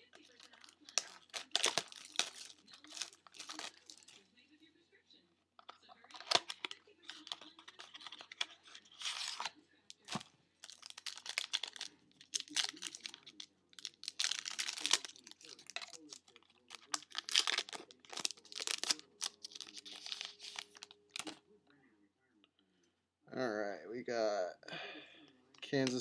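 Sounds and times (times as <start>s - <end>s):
packaging tearing and crinkling: 0.0s - 4.2s, 6.1s - 21.4s.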